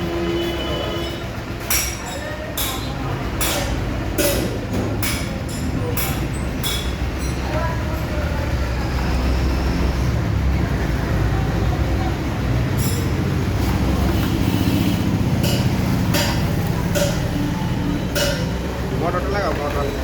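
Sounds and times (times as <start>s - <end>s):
motor vehicles rumbling: 0.0s - 20.0s.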